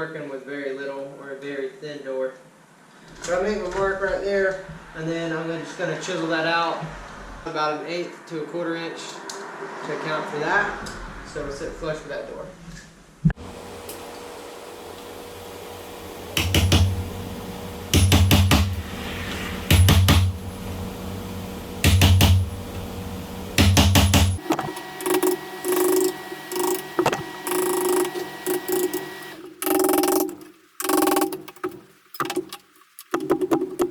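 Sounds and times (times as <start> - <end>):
hammer striking wood chisel: 16.4 - 16.9, 18.0 - 18.8, 19.7 - 20.3, 21.8 - 22.4, 23.6 - 24.4.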